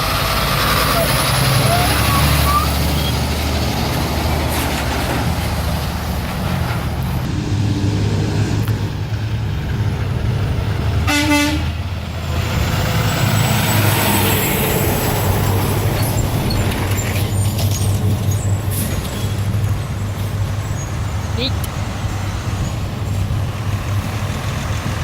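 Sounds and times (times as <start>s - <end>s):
engine and traffic noise: 0.0s - 25.0s
truck horn toot: 11.0s - 11.9s.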